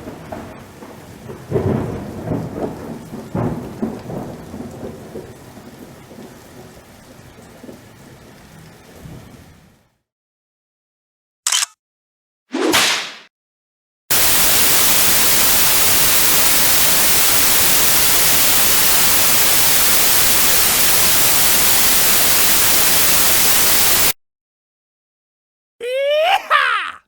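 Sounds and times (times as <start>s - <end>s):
static white noise hiss: 14.1s - 24.2s.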